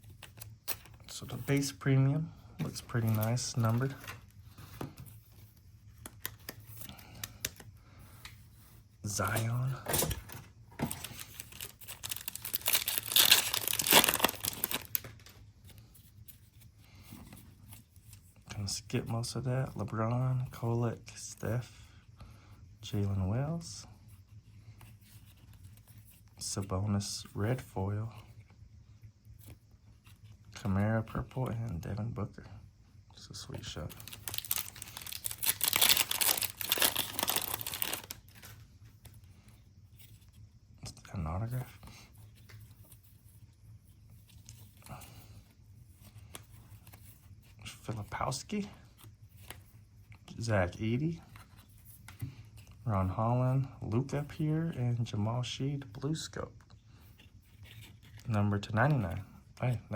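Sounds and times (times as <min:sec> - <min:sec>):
plastic wrapper crinkling and tearing: 0:10.9 - 0:15.4, 0:34.0 - 0:38.6.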